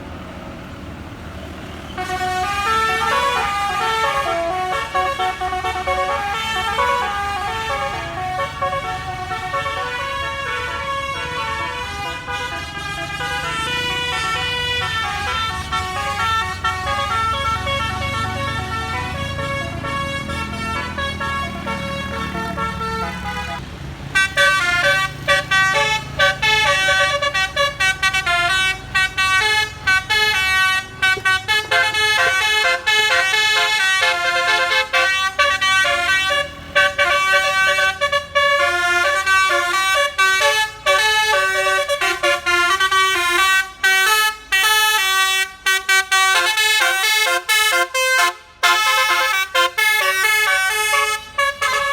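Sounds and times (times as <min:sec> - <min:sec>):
bus engine rumble: 0:00.0 - 0:51.9
melodic bus horns playing a tune: 0:01.6 - 0:51.9.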